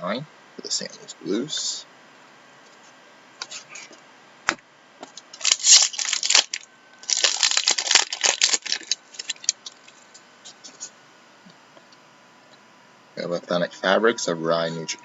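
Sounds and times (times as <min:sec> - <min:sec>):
card packaging rustling: 0:05.4 - 0:10.0.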